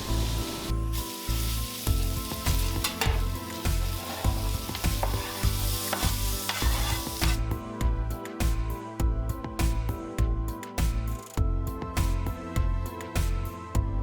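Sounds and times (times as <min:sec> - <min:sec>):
food sizzling on a griddle: 0:00.0 - 0:07.5
music with low beat: 0:00.0 - 0:14.0
spatula scraping and clicking: 0:02.4 - 0:07.4.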